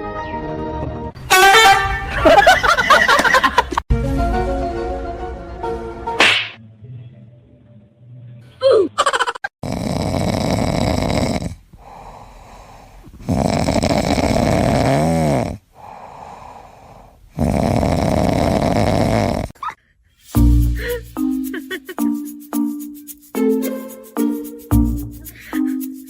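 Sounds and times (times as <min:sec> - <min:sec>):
loud snoring: 0:09.6 - 0:12.3, 0:13.2 - 0:19.6
quiet breathing: 0:11.5 - 0:13.3, 0:15.6 - 0:17.4.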